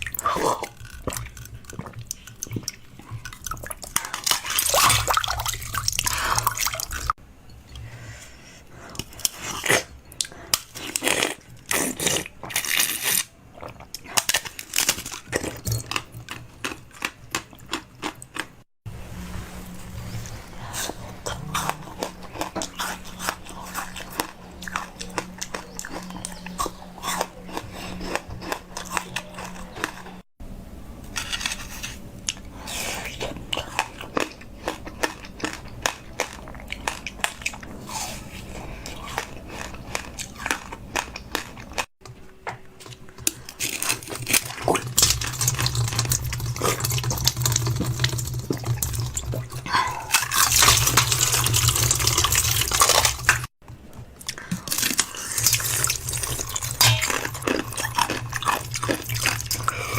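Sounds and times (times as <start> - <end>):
wet liquid eating sounds: 0.0 - 7.2, 20.2 - 30.2, 32.3 - 59.9
crunching and smacking bites: 52.3 - 59.9.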